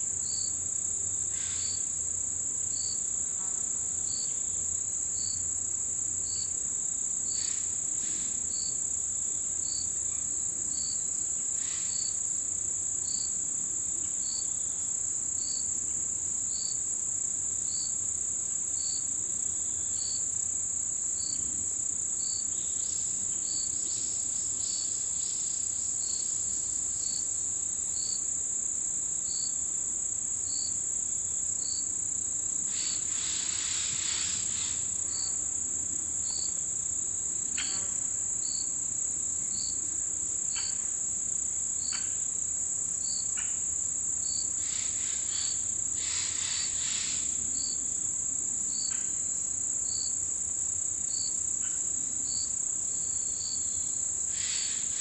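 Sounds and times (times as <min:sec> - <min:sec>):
insect chirping: 0:00.1 - 0:03.2, 0:04.0 - 0:55.0
insect high trill: 0:32.6 - 0:35.3, 0:44.2 - 0:47.8, 0:51.1 - 0:55.0.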